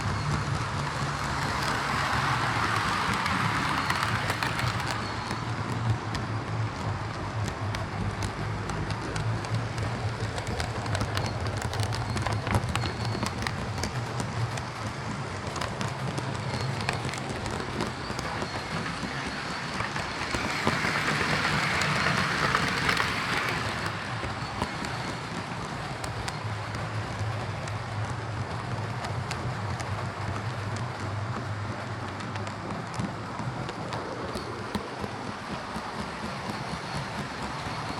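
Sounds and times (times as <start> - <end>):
model train motor hum: 0.0 - 37.9
rattling clicking wheels on track: 0.0 - 37.9.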